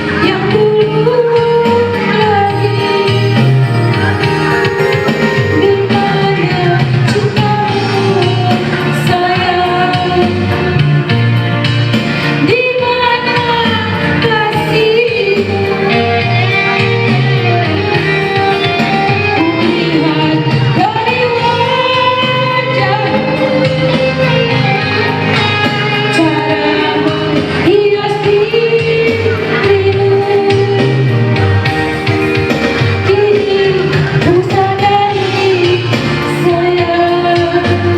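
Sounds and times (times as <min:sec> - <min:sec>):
backing music with steady beat: 0:00.0 - 0:37.9
high voice singing: 0:02.2 - 0:06.9.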